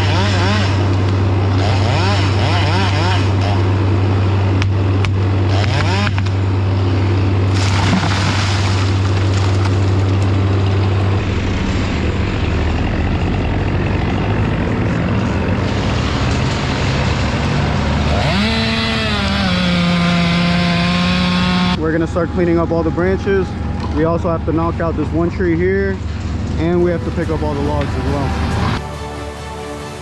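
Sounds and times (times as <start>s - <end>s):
chainsaw revving: 0.0s - 4.4s, 5.0s - 6.5s, 11.1s - 21.8s, 26.0s - 28.8s
engine-powered equipment running: 0.0s - 29.2s.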